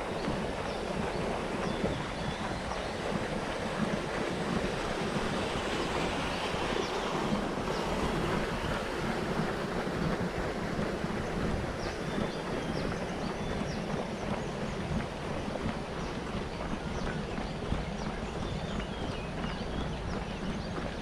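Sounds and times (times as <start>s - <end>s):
water rushing: 0.0s - 21.0s
wind buffeting microphone: 0.0s - 21.0s.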